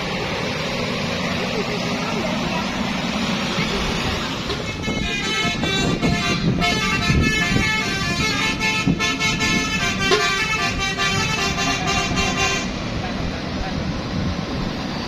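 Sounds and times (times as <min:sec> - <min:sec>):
low vehicle rumble: 0:00.0 - 0:15.0
musical bus air horn: 0:04.6 - 0:12.8.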